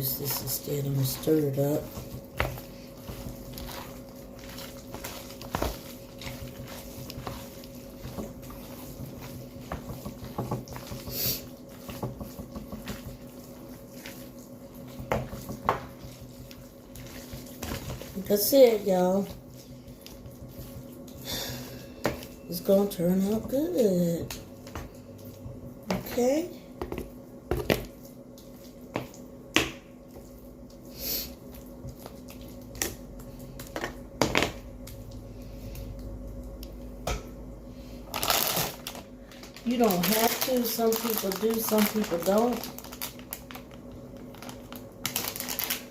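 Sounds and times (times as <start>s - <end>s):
spoon stirring wet mixture: 0.0s - 21.3s, 21.9s - 29.4s
steady low hum: 0.0s - 45.9s.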